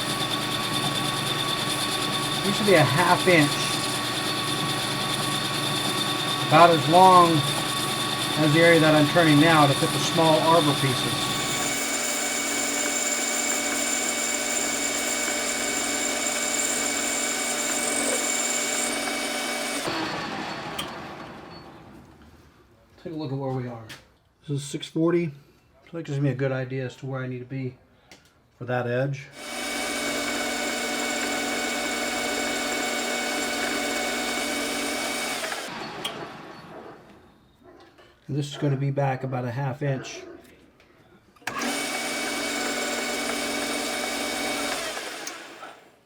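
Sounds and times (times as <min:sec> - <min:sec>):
metal lathe running: 0:00.0 - 0:21.4, 0:29.4 - 0:36.9, 0:41.5 - 0:45.8
high machine whine: 0:00.0 - 0:22.0.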